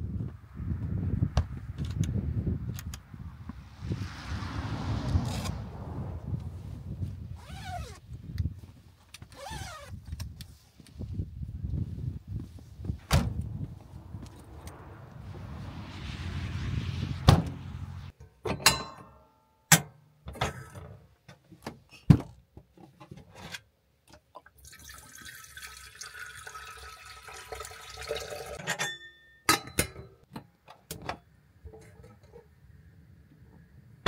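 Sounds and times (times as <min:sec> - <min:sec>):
water pouring into container: 0:24.6 - 0:28.6.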